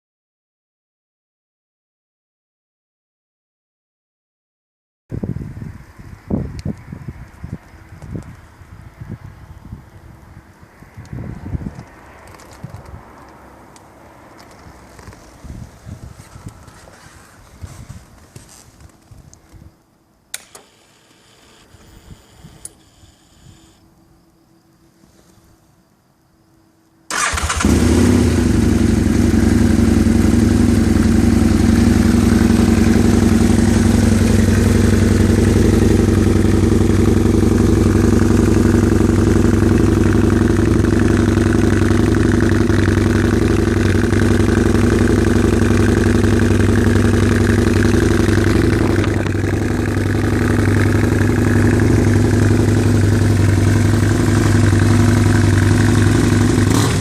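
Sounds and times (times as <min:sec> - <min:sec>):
motorcycle engine starting: 0:14.4 - 0:19.0, 0:27.1 - 0:57.0
motorcycle engine idling: 0:27.1 - 0:57.0.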